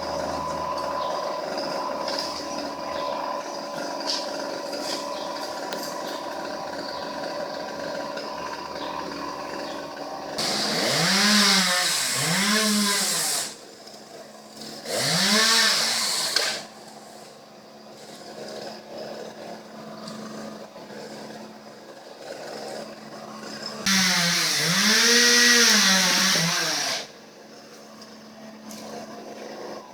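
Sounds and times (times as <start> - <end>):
chainsaw idling: 0.0 - 16.8, 19.3 - 27.2
chainsaw engine revving: 10.4 - 13.6, 14.6 - 16.7, 23.8 - 27.1.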